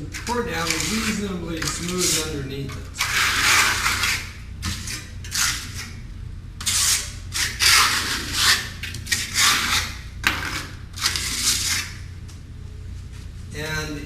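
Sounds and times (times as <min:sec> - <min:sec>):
trowel scraping strokes: 0:00.2 - 0:02.4, 0:03.0 - 0:06.0, 0:06.6 - 0:12.0.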